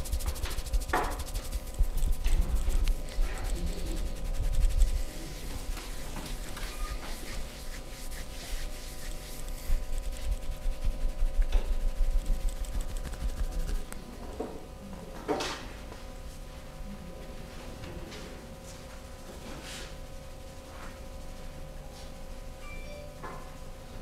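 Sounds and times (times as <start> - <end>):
hands rubbing during massage: 0.0 - 14.0.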